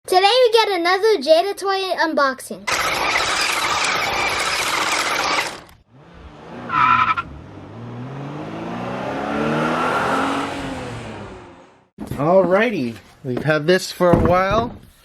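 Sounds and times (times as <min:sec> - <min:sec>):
tire screech: 0:02.7 - 0:11.8
car engine revving: 0:02.7 - 0:11.9.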